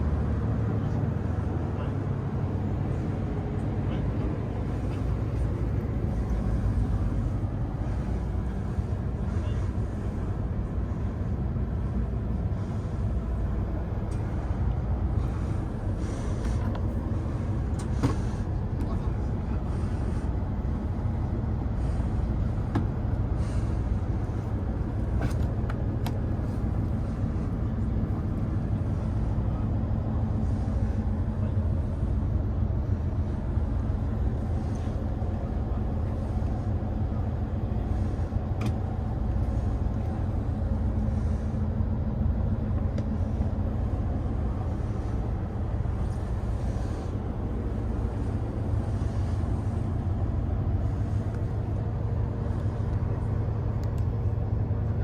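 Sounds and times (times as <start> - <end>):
low hum: 0.0 - 55.0
train rumble inside cabin: 0.0 - 55.0
faint clicks: 53.8 - 54.1.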